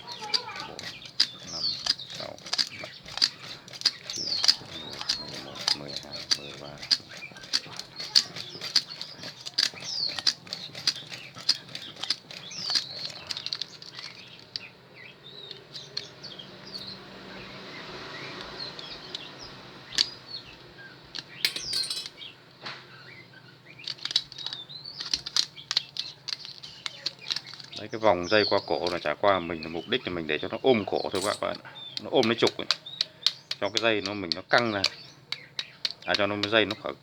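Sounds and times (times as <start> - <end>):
sharp clicks and ticks: 0.0 - 14.7, 23.9 - 29.9, 31.0 - 37.0
small birds chirping: 0.0 - 37.0.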